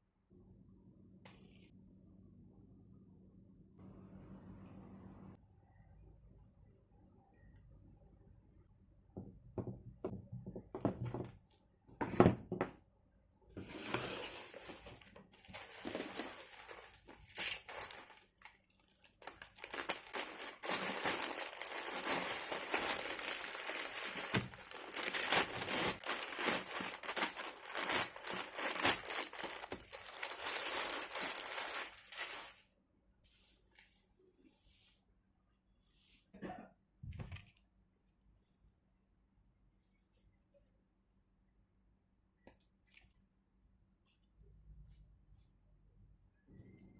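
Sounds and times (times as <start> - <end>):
wrapping crinkling and tearing: 15.4 - 32.6.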